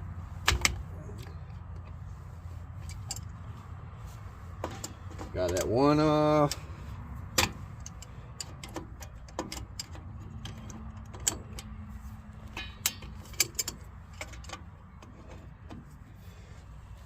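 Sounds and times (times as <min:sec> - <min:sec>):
pliers clinking on metal springs: 0:12.5 - 0:14.6.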